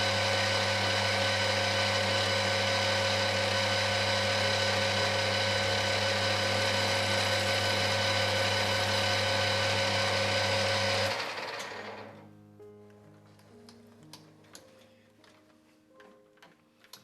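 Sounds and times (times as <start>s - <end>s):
machine tool motor whine: 0.0s - 12.2s.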